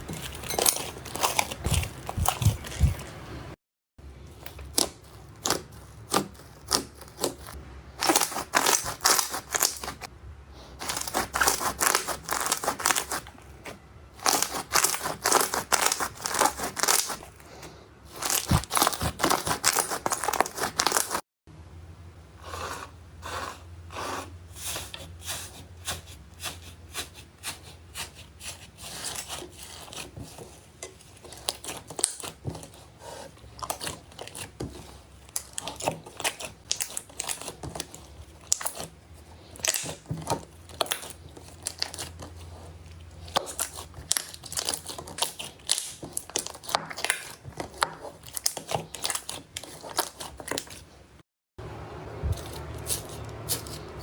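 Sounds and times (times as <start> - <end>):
slime crackling and popping: 6.3 - 10.1, 10.8 - 13.3, 14.2 - 17.4, 18.1 - 21.2, 35.3 - 38.9, 39.6 - 42.3, 43.3 - 50.8.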